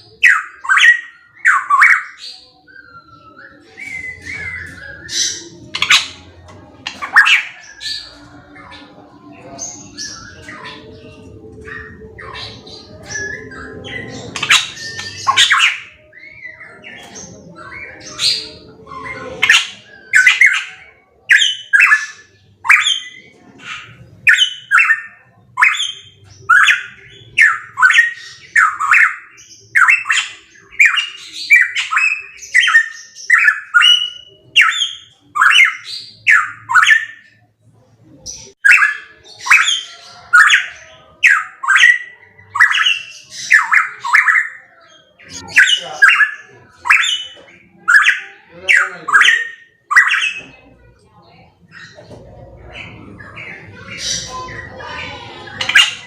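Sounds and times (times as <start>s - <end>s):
bird calling with sharp notes: 9.6s - 37.5s.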